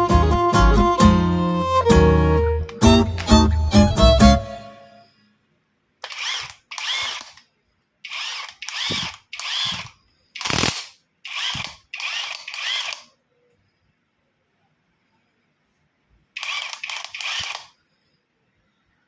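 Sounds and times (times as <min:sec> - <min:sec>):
impact driver motor whirring: 0:06.0 - 0:07.4, 0:08.1 - 0:10.7, 0:11.3 - 0:13.0, 0:16.4 - 0:17.7
mechanical rattle: 0:06.0 - 0:13.2, 0:16.4 - 0:17.9.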